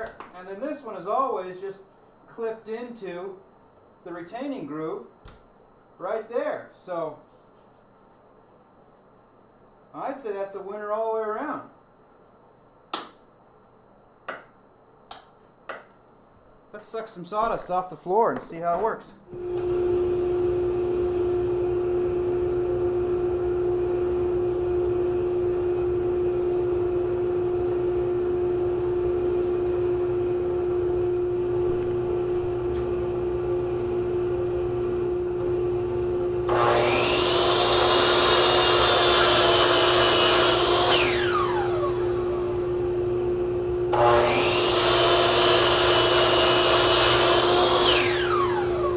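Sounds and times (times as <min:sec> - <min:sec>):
high-pitched machine running: 0:19.4 - 0:48.9
vacuum motor whining: 0:19.4 - 0:48.9.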